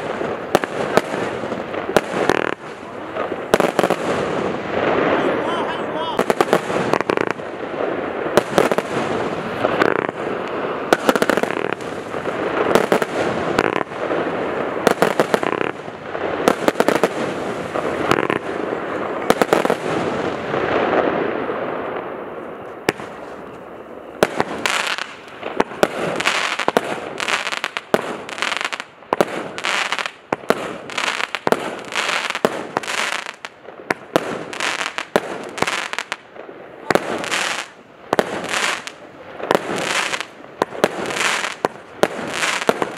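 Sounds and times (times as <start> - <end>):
fireworks launches and crackling bursts: 0.0 - 42.9
fireworks shots: 0.0 - 42.9.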